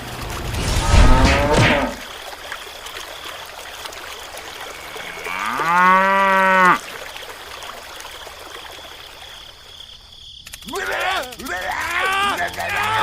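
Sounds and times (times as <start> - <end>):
cow mooing: 4.8 - 6.8.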